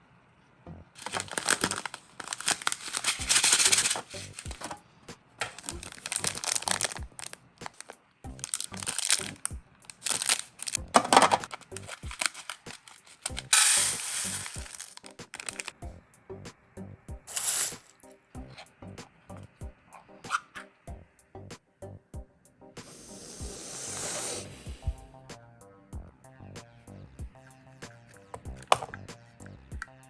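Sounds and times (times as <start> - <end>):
plastic packaging crinkling and tearing: 1.0 - 4.8, 5.4 - 15.8.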